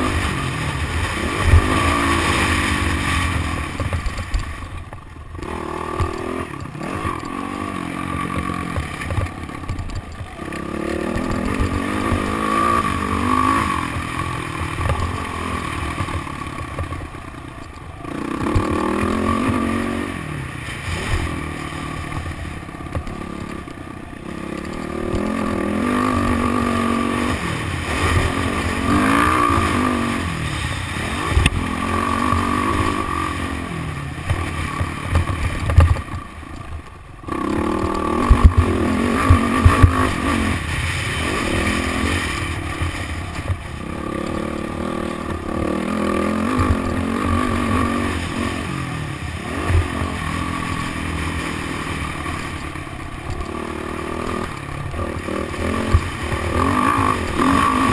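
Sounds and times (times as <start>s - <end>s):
dirt bike engine revving: 0.0s - 57.9s.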